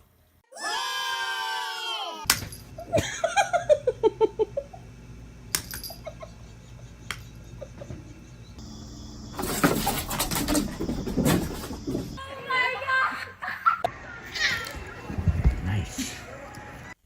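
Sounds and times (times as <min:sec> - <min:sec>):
drawn-out high cry: 0:00.5 - 0:02.3
person laughing: 0:02.8 - 0:04.9, 0:05.8 - 0:08.5.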